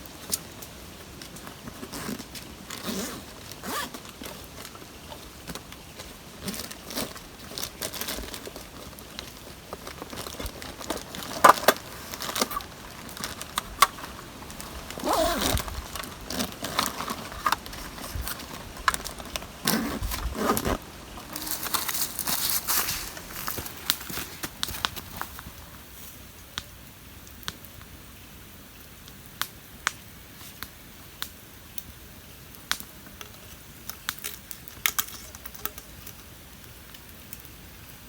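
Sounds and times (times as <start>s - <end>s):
rustling and crinkling: 0.0s - 26.6s.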